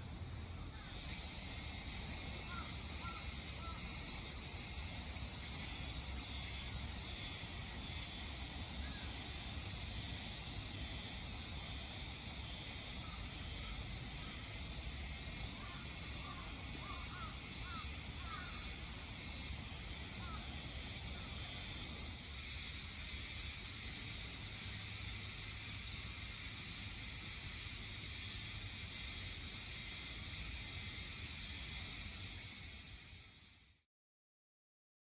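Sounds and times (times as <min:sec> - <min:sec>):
insects droning: 0:00.0 - 0:33.9.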